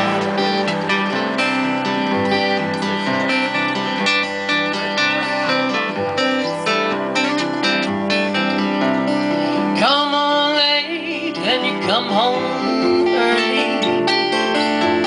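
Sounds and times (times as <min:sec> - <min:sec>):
acoustic guitars strumming: 0:00.0 - 0:15.0
bass guitar line: 0:00.0 - 0:15.0
person singing: 0:02.0 - 0:07.8, 0:09.5 - 0:15.0.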